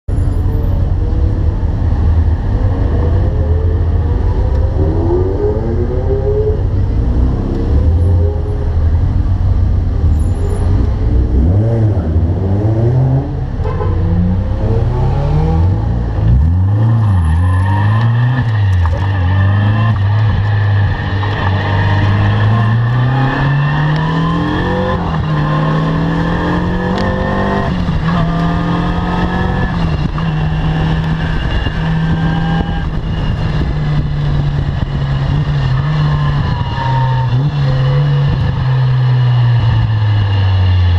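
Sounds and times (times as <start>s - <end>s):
sports car engine revving: 9.9s - 40.9s.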